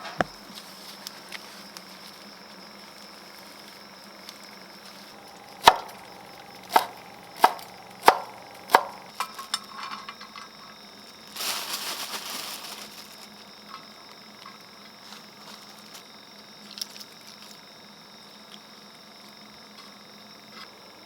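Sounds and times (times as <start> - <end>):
knife chopping on cutting board: 5.6 - 6.0, 6.7 - 9.0.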